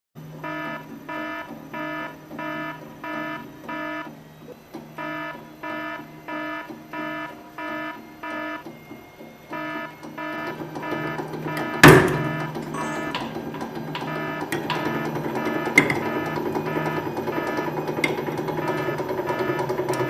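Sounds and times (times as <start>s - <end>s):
electronic beeper beeping: 9.5s - 20.0s.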